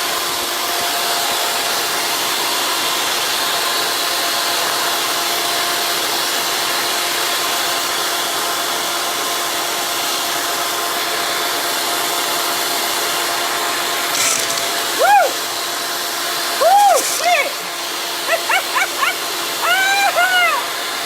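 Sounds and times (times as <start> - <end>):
electric motor whining: 13.5 - 21.0
dog barking: 18.3 - 19.2.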